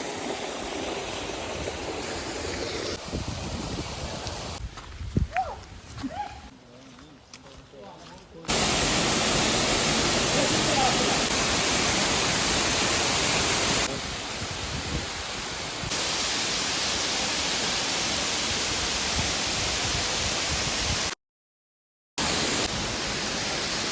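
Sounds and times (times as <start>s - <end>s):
steady rushing hiss: 8.5s - 21.1s.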